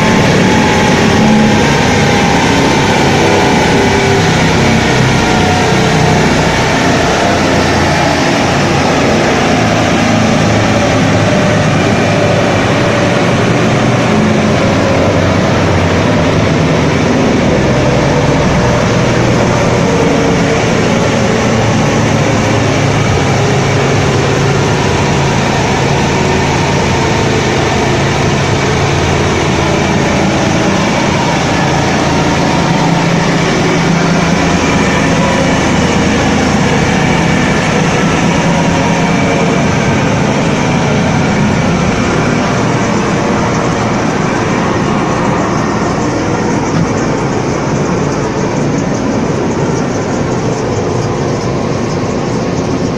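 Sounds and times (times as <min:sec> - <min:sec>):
car engine running loud: 0:00.0 - 0:52.9.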